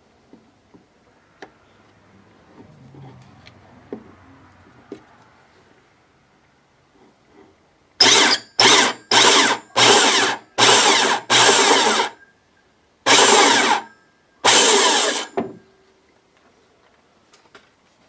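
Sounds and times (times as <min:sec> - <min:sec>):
electric drill boring into wood: 0:08.0 - 0:12.2, 0:13.1 - 0:15.5.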